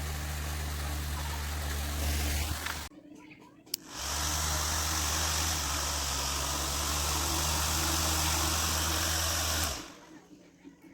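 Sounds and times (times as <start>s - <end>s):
toy helicopter motor whirring: 3.8s - 10.0s.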